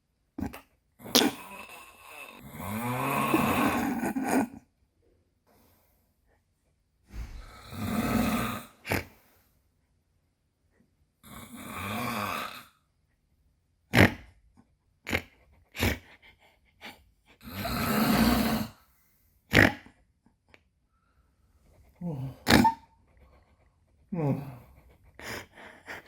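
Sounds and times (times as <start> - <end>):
man snoring: 1.4 - 4.3, 7.4 - 9.1, 11.2 - 12.8, 17.4 - 18.8.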